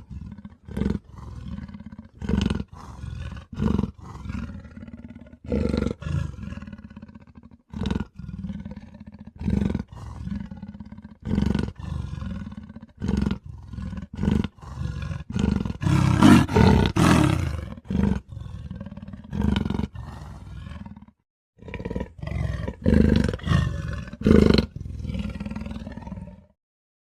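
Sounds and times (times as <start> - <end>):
bear growls and roars: 0.0 - 26.6.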